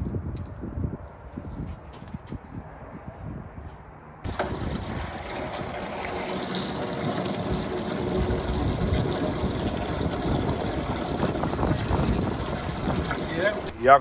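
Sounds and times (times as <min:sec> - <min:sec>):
water rushing and splashing: 0:04.3 - 0:13.8.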